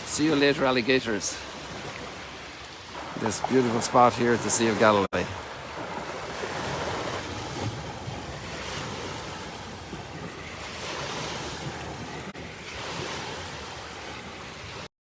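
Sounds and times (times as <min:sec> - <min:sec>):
waves washing onto shore: 0:00.0 - 0:14.9
wind on microphone: 0:01.4 - 0:14.9.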